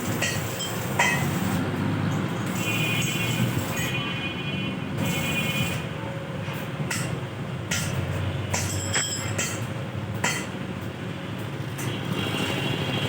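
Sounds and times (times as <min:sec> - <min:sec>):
steady mechanical noise: 0:00.0 - 0:13.0
metallic clinks and knocks: 0:06.9 - 0:10.6.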